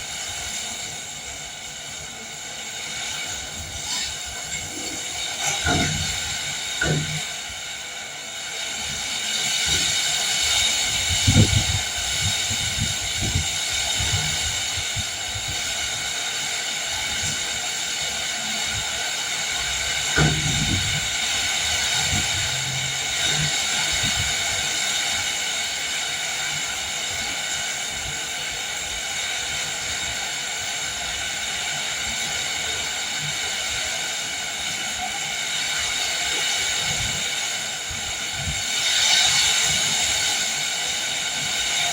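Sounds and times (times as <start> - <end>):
heavy rain hissing: 0.0 - 41.9.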